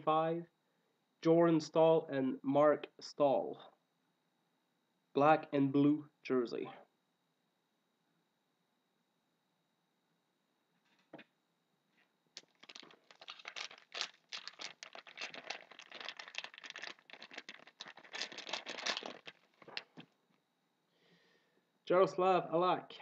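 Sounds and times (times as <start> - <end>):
wrapper tearing and crinkling: 12.4 - 20.0.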